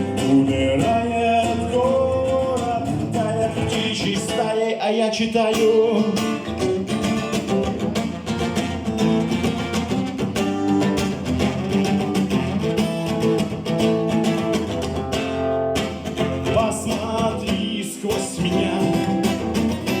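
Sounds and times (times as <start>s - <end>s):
person singing without words: 0.0s - 6.6s, 16.4s - 20.0s
acoustic guitar strumming chords: 0.0s - 20.0s.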